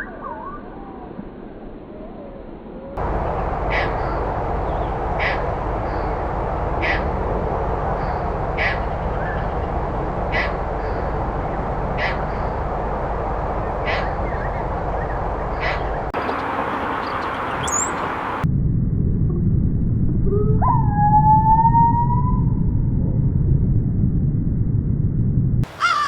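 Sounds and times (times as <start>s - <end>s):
slowed bird call: 15.5s - 18.4s, 25.6s - 26.0s.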